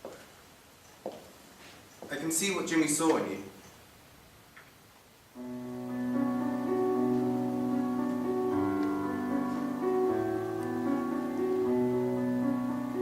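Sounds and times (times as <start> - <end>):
gentle piano music: 5.4 - 13.0.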